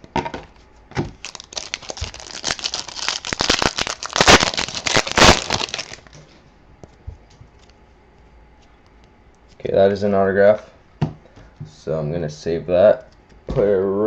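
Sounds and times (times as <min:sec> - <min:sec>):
foil wrapper crinkling and tearing: 0:01.2 - 0:06.2.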